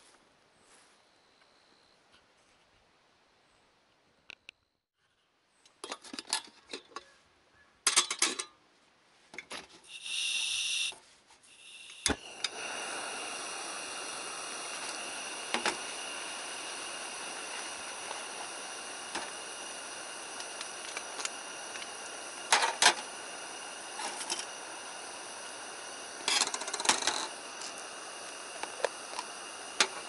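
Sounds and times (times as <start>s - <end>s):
metal cookware clattering: 7.9s - 8.5s
steady hiss: 9.8s - 30.0s.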